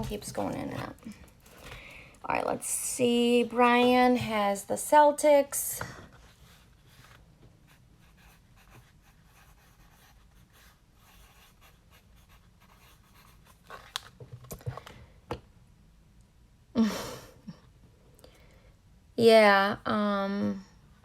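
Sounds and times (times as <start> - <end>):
short breath: 1.5 - 2.2
cards scraping and rustling: 13.5 - 15.0.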